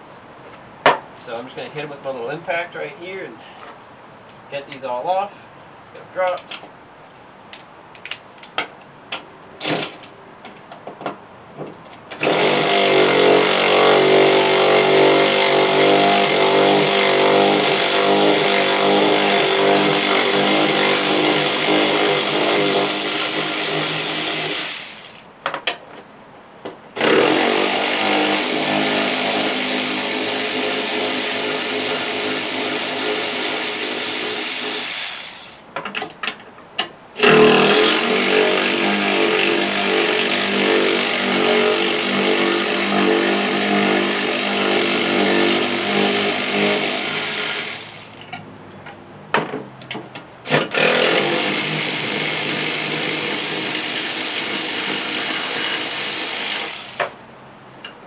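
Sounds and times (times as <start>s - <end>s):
clicks and knocks of bolts and tool: 6.3s - 6.7s, 25.4s - 26.8s, 35.8s - 37.0s, 48.2s - 50.3s
impact driver running: 12.2s - 25.2s, 27.0s - 35.6s, 37.2s - 48.2s, 50.5s - 57.1s.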